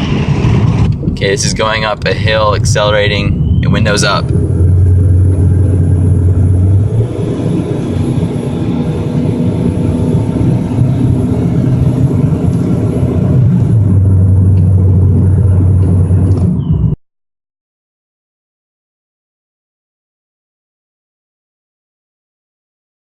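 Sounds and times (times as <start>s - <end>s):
car engine droning from inside: 0.0s - 17.0s.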